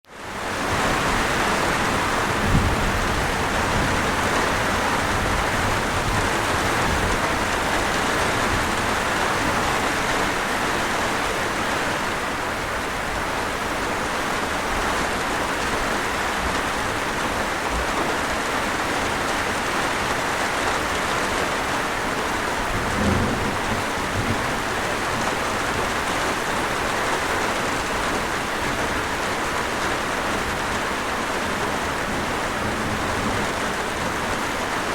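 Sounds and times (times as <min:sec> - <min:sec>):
light rain falling: 0:00.1 - 0:34.9
thunder rumbling: 0:00.8 - 0:10.5, 0:22.1 - 0:27.0.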